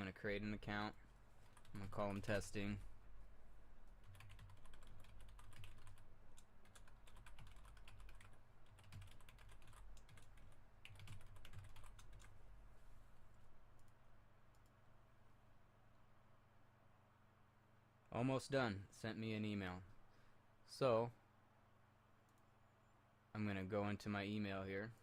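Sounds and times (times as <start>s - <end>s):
low electrical hum: 0.0s - 25.0s
typing on computer keyboard: 4.0s - 12.4s.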